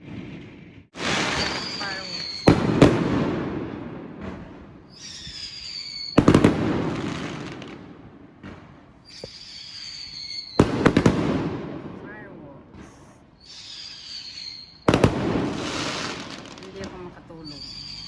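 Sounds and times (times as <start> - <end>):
fireworks bangs: 0.0 - 18.0
high falling whistle: 1.2 - 2.7, 4.9 - 6.3, 9.1 - 10.6, 13.4 - 14.8, 17.4 - 18.0.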